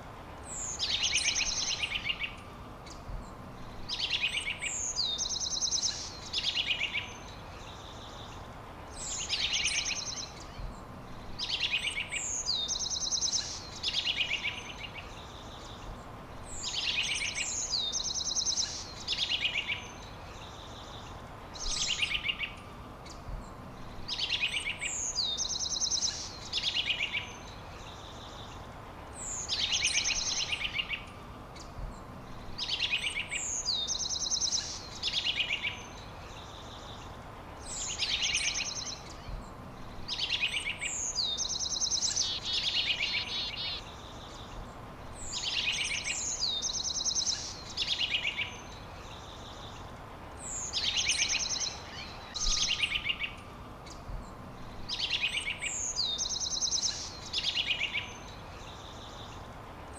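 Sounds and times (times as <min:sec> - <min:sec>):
soft steady hiss: 0:00.0 - 0:59.9
songbird singing with trill: 0:00.0 - 0:59.9.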